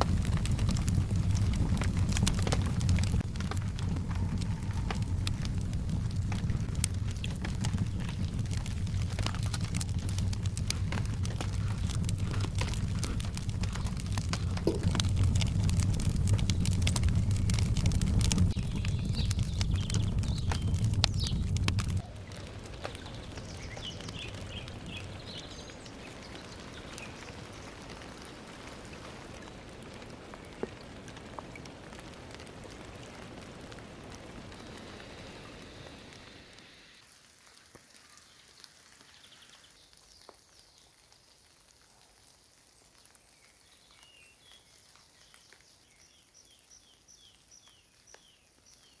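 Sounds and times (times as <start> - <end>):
birds chirping: 0.0 - 29.4
rain falling in forest: 0.0 - 49.0.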